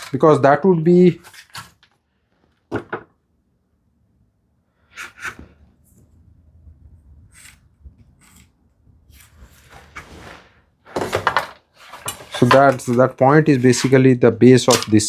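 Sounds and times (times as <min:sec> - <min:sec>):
tools knocking: 0:11.0 - 0:14.0.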